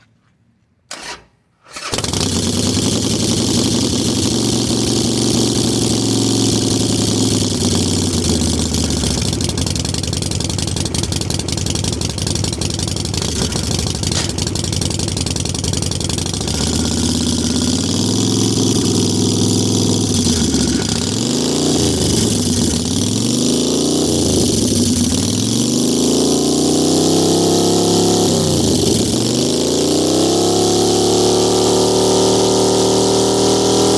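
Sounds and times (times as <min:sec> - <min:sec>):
engine cranking: 0:00.9 - 0:04.4, 0:08.4 - 0:23.4
motorcycle engine revving: 0:00.9 - 0:33.9
motorcycle engine idling: 0:01.8 - 0:25.9.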